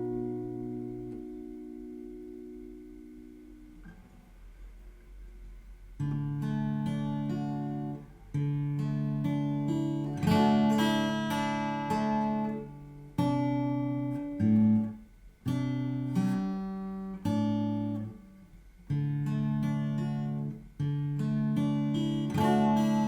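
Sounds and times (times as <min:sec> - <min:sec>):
acoustic guitar strummed chords: 0:00.0 - 0:04.3, 0:05.9 - 0:23.0.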